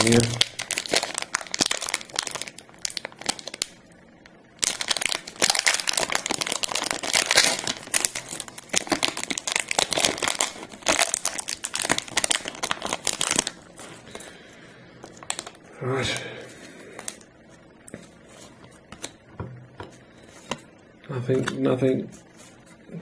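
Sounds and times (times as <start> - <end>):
wrapper tearing and crinkling: 0.0 - 3.7, 4.6 - 14.0, 15.2 - 15.6.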